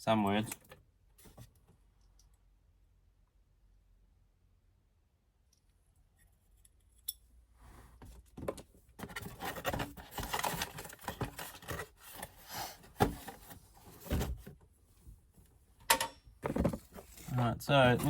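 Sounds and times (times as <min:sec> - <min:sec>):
packaging rustling: 0:09.0 - 0:14.4.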